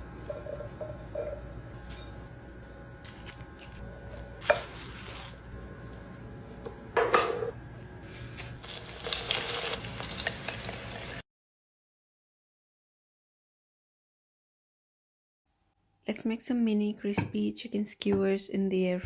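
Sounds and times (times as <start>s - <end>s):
food sizzling: 8.5s - 11.2s.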